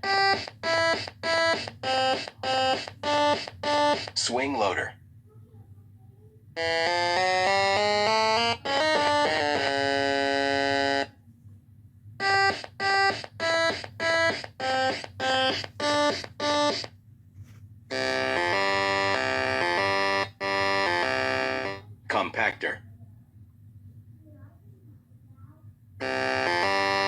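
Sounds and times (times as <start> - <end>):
electronic background music: 0.0 - 4.3, 6.6 - 11.1, 12.2 - 16.9, 17.9 - 21.8, 26.0 - 27.0.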